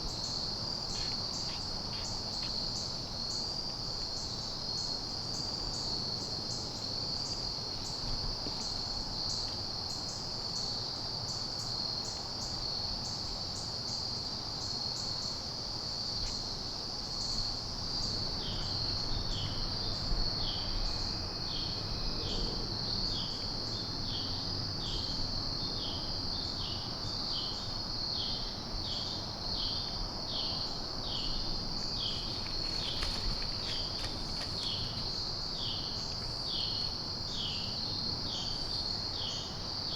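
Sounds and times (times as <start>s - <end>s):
cricket continuous high trill: 0.0s - 39.9s
insect repeated chirp: 27.4s - 39.9s.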